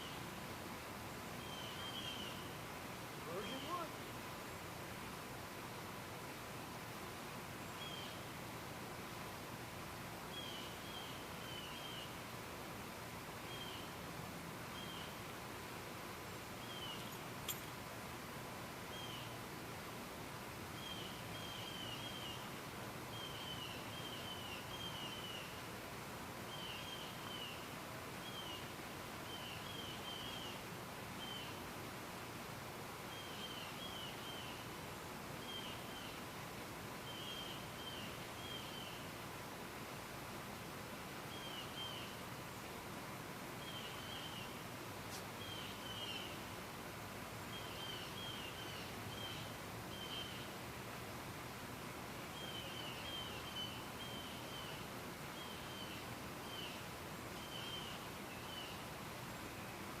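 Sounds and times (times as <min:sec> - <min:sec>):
outdoor background hiss: 0:00.0 - 1:00.0
bird chirping: 0:16.6 - 0:17.7.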